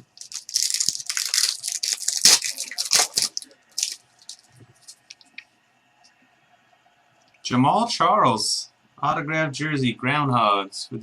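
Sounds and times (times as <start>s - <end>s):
packaging ripping and crinkling: 0.0s - 5.3s.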